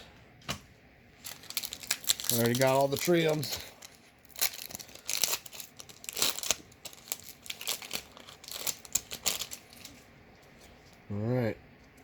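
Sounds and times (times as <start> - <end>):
cards rustling: 1.2 - 10.0
foil wrapper crinkling: 1.2 - 10.1.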